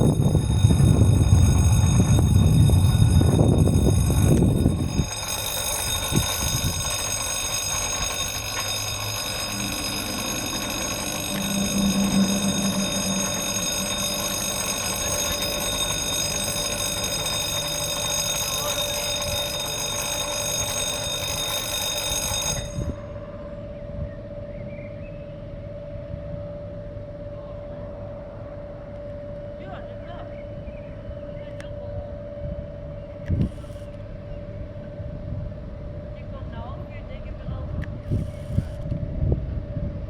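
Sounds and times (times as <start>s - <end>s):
electric alarm ringing: 0.0s - 24.5s.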